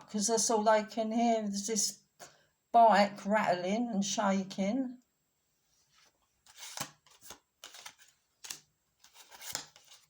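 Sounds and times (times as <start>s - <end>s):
cards rustling: 5.9s - 10.0s.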